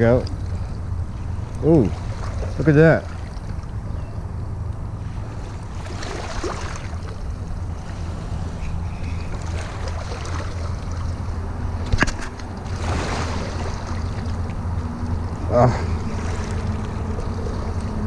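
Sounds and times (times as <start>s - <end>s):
noisy wash: 0.0s - 18.0s
steady low drone: 0.0s - 18.0s.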